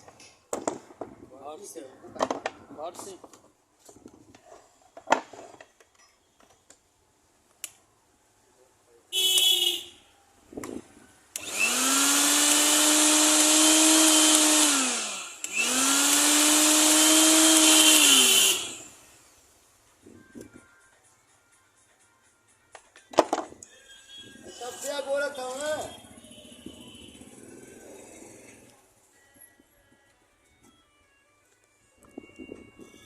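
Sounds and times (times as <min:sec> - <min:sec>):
mixer grinder motor whine: 0:11.3 - 0:19.0.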